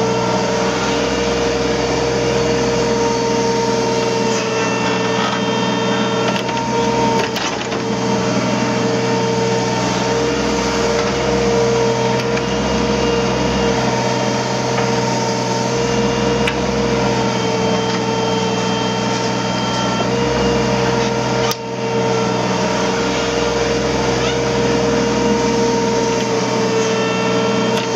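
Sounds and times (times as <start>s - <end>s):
excavator engine droning whine: 0.0s - 27.9s.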